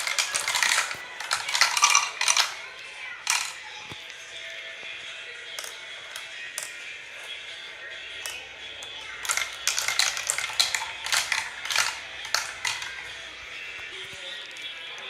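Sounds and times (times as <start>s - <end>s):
marbles clattering down a track: 0.0s - 3.7s, 5.6s - 5.8s, 8.2s - 13.9s.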